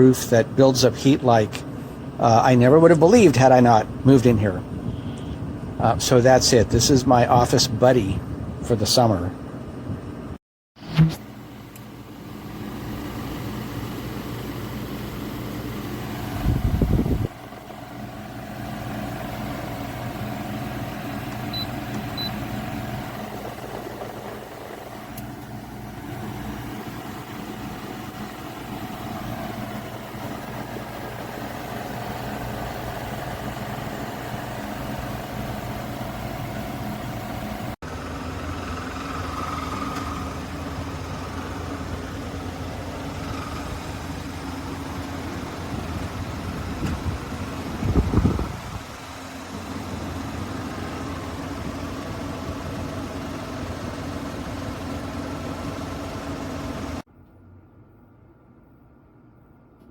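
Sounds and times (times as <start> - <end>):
air conditioner humming: 0.0 - 10.3, 11.3 - 37.8.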